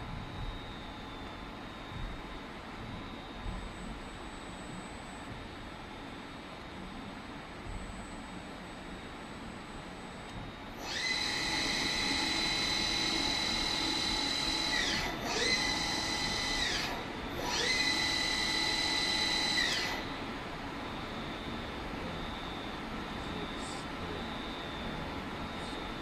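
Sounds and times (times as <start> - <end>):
machine spindle whining: 10.2 - 26.0.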